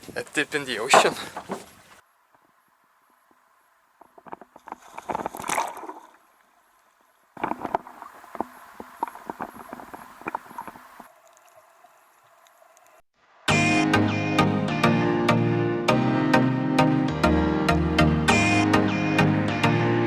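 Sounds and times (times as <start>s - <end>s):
water splashing and bubbling: 4.0s - 13.0s.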